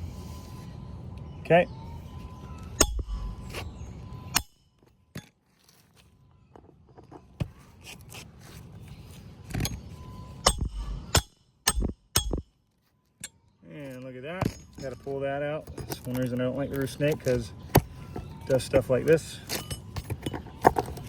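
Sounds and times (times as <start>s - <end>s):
metal tools knocking on shingles: 14.4s - 18.4s, 19.4s - 21.0s.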